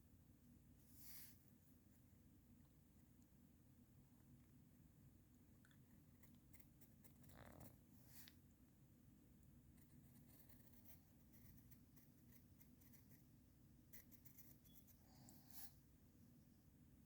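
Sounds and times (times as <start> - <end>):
pencil scratching on paper: 6.2 - 8.4, 9.7 - 13.3, 13.9 - 15.8.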